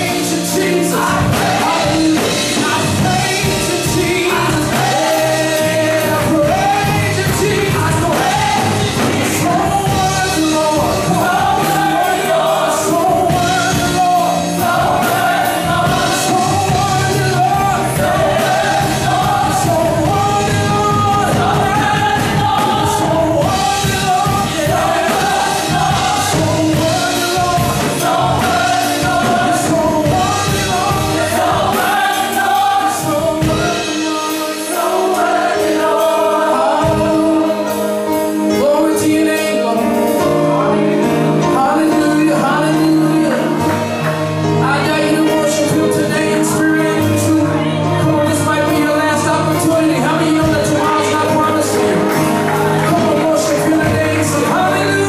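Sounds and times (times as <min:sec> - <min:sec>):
gospel singers with full band: 0:00.0 - 0:55.0.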